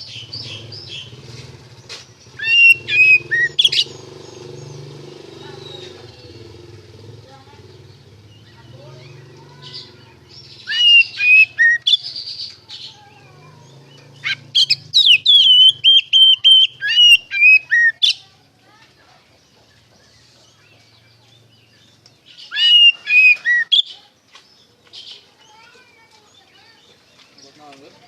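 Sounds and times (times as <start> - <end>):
songbird whistling: 2.3 - 6.4, 9.0 - 12.4, 14.2 - 18.3, 22.3 - 24.1.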